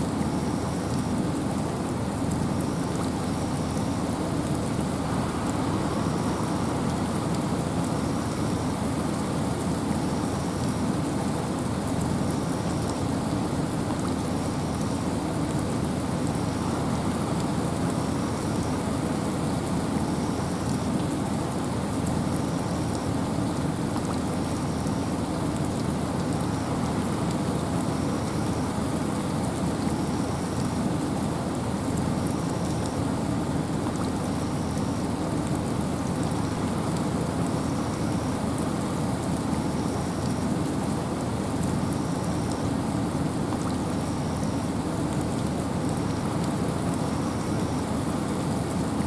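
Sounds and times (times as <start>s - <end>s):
rain: 0.0s - 49.0s
wind in forest: 0.0s - 49.0s.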